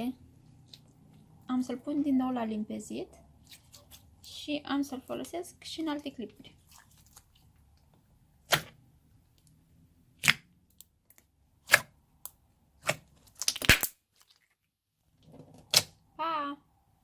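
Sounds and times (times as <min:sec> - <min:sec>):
slime cracking and popping: 0:08.4 - 0:08.8, 0:10.2 - 0:14.4, 0:15.7 - 0:16.0.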